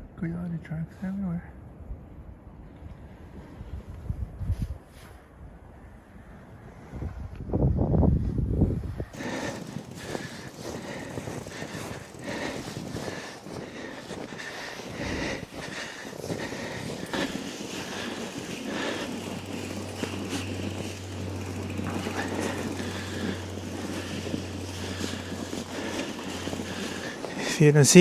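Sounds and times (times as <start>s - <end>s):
steady low hum: 8.7s - 28.0s
bike crunching over snow: 8.8s - 28.0s.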